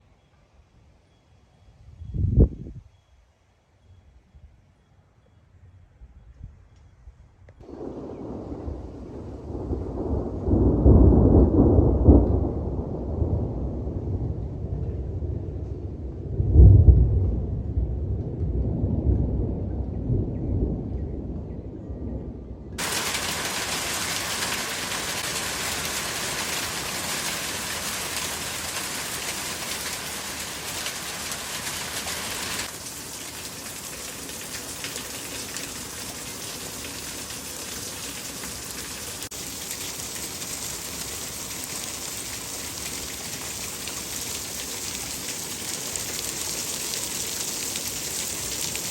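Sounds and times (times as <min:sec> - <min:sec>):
low rumble: 0:07.8 - 0:22.8
hail and rain pelting down: 0:22.8 - 0:48.9.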